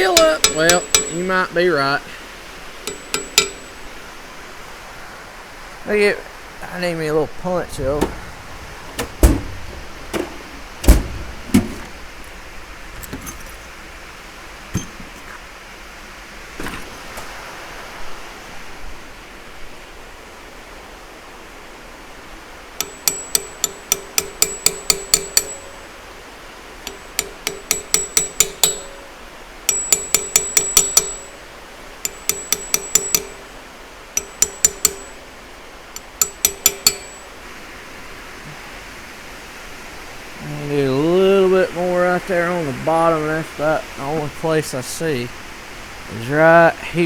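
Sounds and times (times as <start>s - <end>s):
hammer striking punch on metal: 0.2s - 1.2s, 2.9s - 3.9s, 7.8s - 12.2s, 14.8s - 15.2s, 22.8s - 25.9s, 26.9s - 31.4s, 32.1s - 33.5s, 34.2s - 35.2s, 36.0s - 37.3s
faint knocks: 7.7s - 13.8s.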